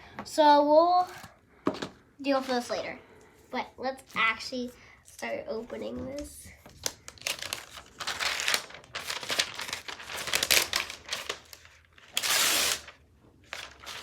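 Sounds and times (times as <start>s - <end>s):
packaging crinkling and tearing: 6.7s - 14.0s
packaging rasp: 7.1s - 13.0s.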